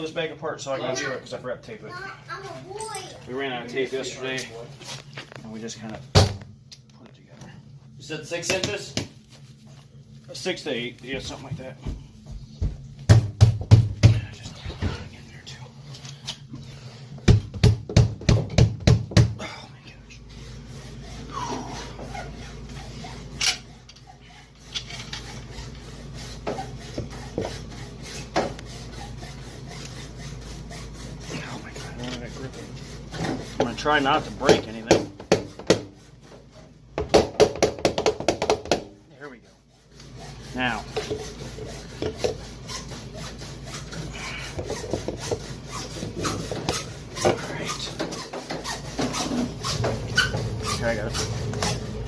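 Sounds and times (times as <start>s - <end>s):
steady low hum: 0.0s - 37.1s
hand saw cutting plastic pipe: 20.9s - 36.4s, 39.7s - 51.9s.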